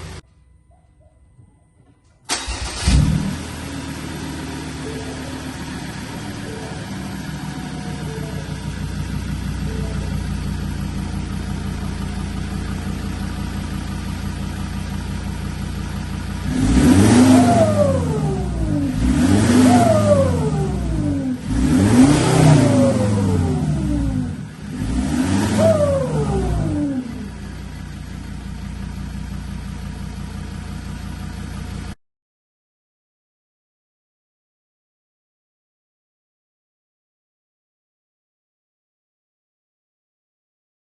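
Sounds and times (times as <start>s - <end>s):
diesel engine idling: 0.0s - 0.2s, 2.3s - 32.0s
engine revving: 2.3s - 29.4s.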